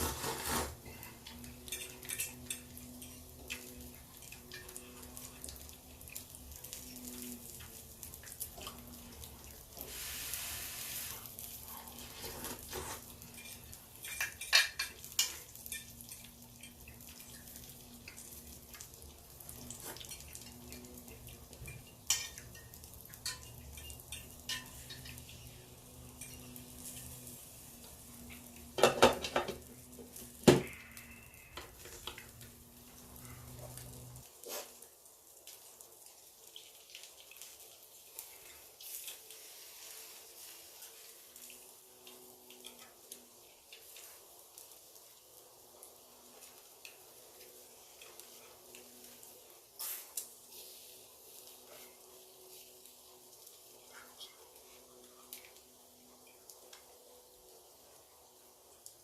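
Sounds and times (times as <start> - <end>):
faint steady hum: 0.0 - 34.4, 35.1 - 59.0
cutlery clinking against dishes: 1.6 - 4.8, 12.3 - 16.8, 21.6 - 25.5.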